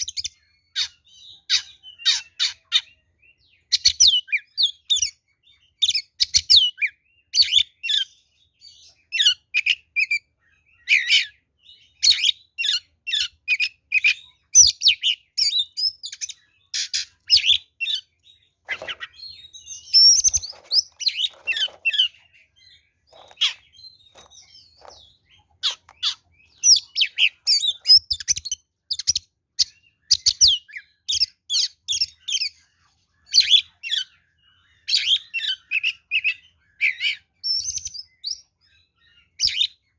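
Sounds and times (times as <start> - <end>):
bird singing whistles: 25.6 - 32.5.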